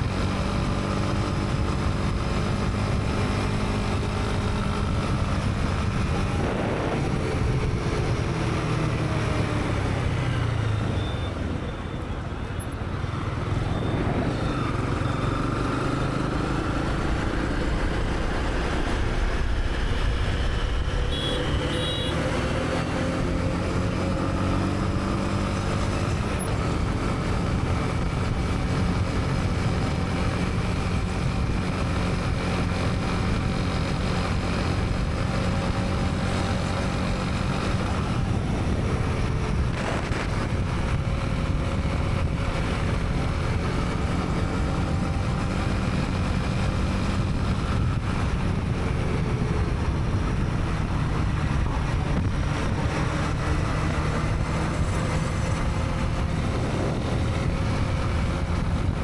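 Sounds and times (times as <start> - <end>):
traffic noise: 0.0 - 59.0
motorcycle engine revving: 13.1 - 59.0.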